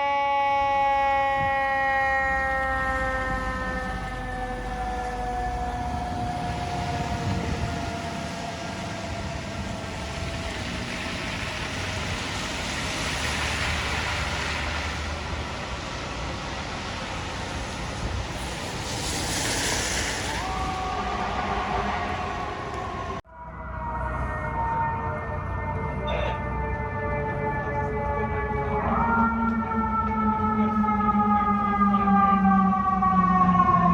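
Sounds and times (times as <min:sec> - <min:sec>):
mechanical siren winding down: 0:00.0 - 0:12.6
street traffic: 0:00.0 - 0:33.9.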